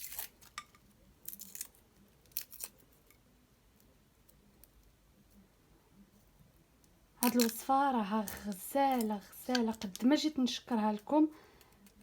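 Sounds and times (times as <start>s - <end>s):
garlic skin crackling: 0.0s - 3.2s, 7.2s - 10.3s.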